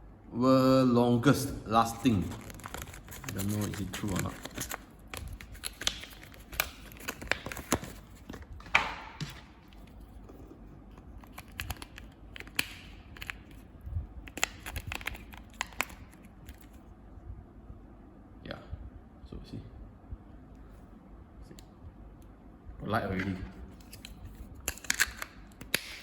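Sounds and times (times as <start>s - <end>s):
cardboard and plastic tearing: 2.0s - 8.7s.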